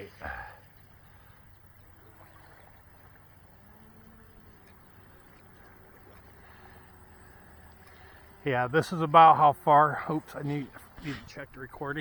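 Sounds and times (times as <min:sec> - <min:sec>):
distant rc speedboat motor: 0:00.7 - 0:10.1.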